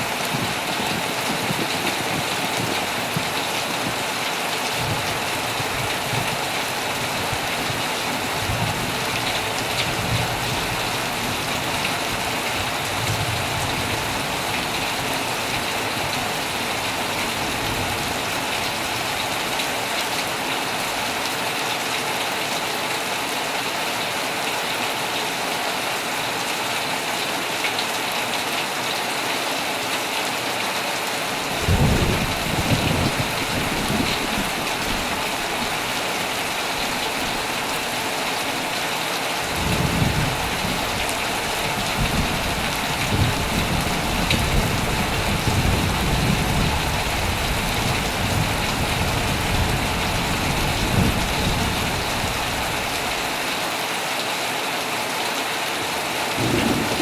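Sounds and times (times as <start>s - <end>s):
heavy rain on a tent: 0.0s - 57.0s
rolling thunder: 31.5s - 36.0s, 39.5s - 52.6s, 56.4s - 57.0s
thunderclap: 31.5s - 36.0s, 56.4s - 57.0s.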